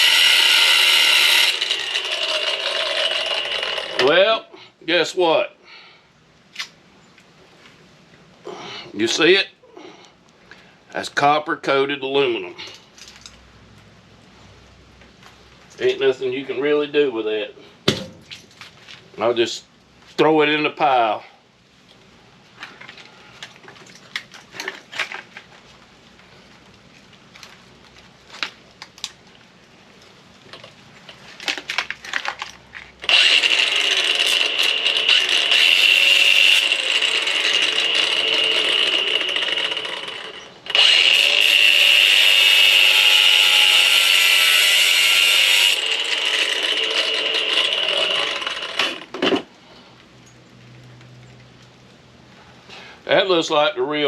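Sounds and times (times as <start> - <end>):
power tool cutting: 0.0 - 4.2, 33.0 - 49.1
clicks and knocks of parts: 12.7 - 13.4, 22.6 - 25.6, 30.5 - 33.2.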